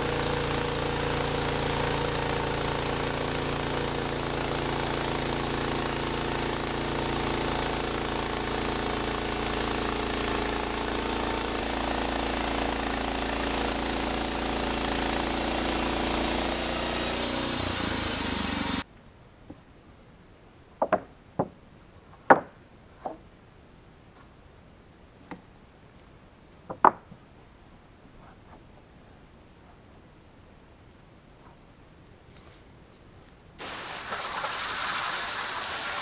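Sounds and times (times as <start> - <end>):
bandsaw mill sawing log: 0.0 - 18.8, 33.6 - 36.0
sharp knocks and clatters: 20.8 - 23.2, 26.7 - 27.2.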